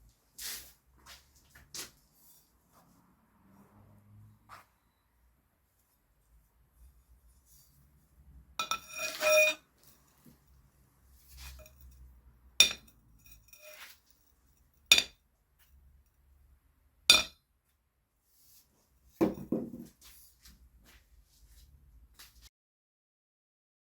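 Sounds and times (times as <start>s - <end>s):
ringing metal clatter: 8.6s - 9.6s.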